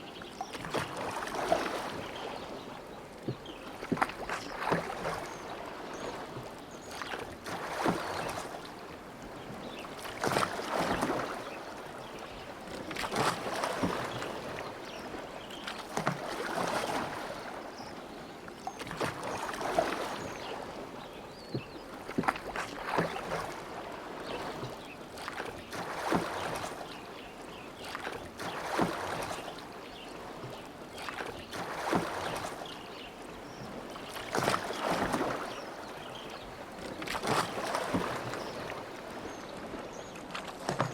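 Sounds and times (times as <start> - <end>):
water dripping and lapping: 0.0 - 17.9, 18.5 - 20.8, 21.4 - 40.9
oars splashing in water: 0.0 - 40.9.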